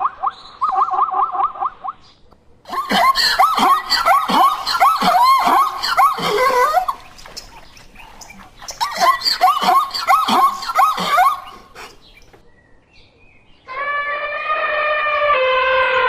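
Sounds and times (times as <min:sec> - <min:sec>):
animal squealing: 0:13.7 - 0:16.0.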